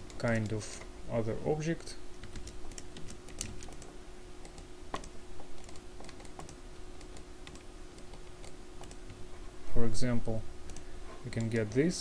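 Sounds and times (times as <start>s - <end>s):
faint steady hum: 0.0s - 12.0s
computer keyboard typing: 2.2s - 9.2s, 10.7s - 11.7s.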